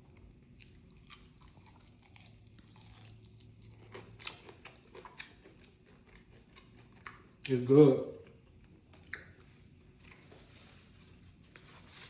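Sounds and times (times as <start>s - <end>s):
crunchy chewing: 0.1s - 7.3s.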